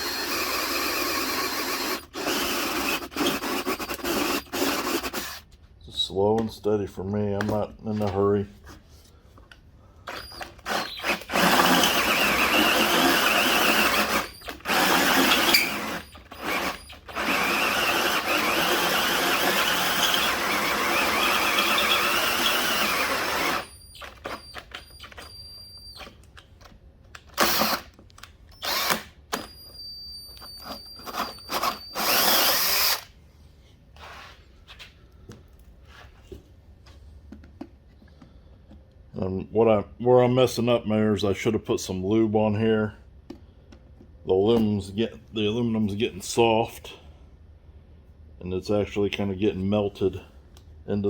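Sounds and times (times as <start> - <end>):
drill hole saw cutting metal: 0.0 - 5.4, 10.1 - 25.3, 27.4 - 27.9, 28.6 - 29.6, 30.4 - 33.1.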